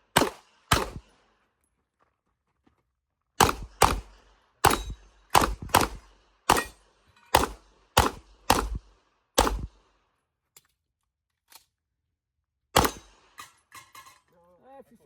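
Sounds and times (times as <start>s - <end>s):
handgun shots: 0.1s - 1.0s, 3.4s - 9.7s, 12.8s - 13.3s.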